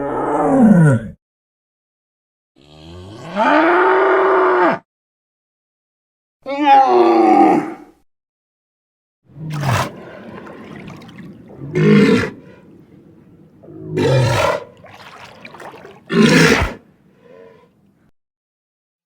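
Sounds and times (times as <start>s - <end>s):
animal roars: 9.4s - 17.7s.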